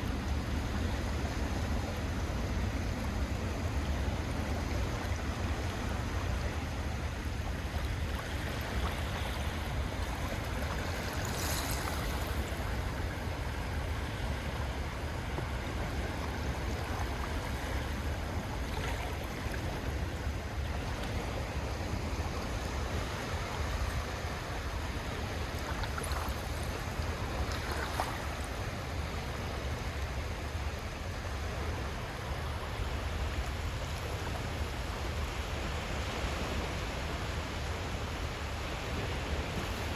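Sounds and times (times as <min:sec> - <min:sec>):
small waves washing onto beach: 0:00.0 - 0:39.9
water splashes: 0:03.9 - 0:36.7.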